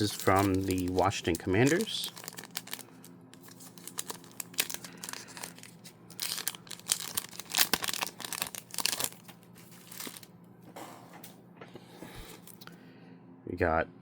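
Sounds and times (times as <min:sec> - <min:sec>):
card packaging crinkling and tearing: 0:00.0 - 0:10.3.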